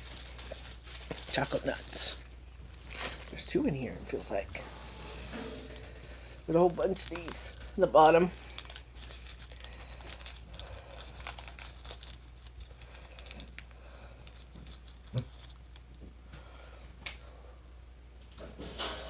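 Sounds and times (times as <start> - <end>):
plastic packet crinkling: 0.0 - 4.5, 5.8 - 16.0.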